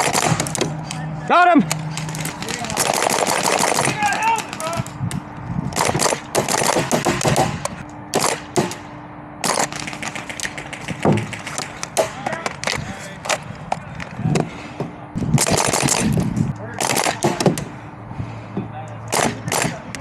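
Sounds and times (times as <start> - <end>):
airsoft guns firing: 0.0 - 0.8, 1.9 - 4.9, 5.8 - 12.5, 15.4 - 16.2, 16.8 - 17.7, 19.1 - 19.9.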